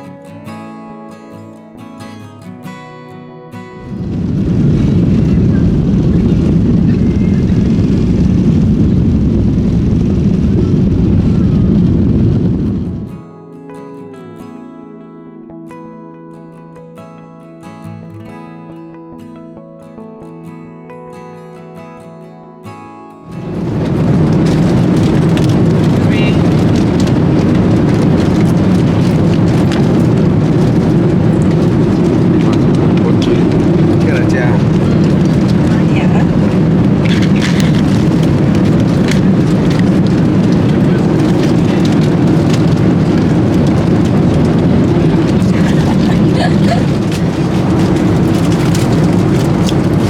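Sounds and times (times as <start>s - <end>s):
acoustic guitar music: 0.0s - 50.0s
jet engines rumbling in cabin: 3.8s - 13.2s, 23.3s - 50.0s.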